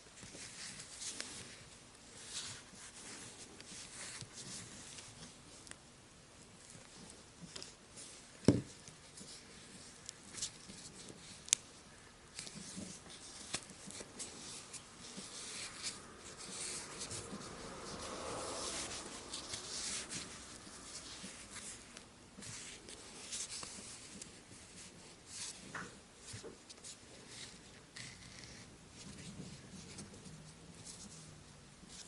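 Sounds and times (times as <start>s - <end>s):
scratchy rubbing and wiping: 12.4s - 31.3s.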